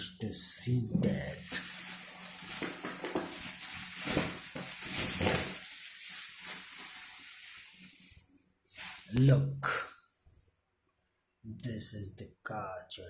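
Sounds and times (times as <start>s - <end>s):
plastic packaging crinkling: 1.4s - 8.2s.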